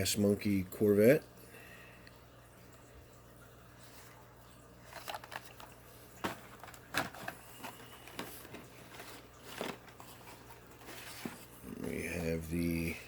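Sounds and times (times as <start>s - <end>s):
faint steady hum: 0.0s - 13.0s
rustling cardboard and plastic: 4.8s - 12.5s.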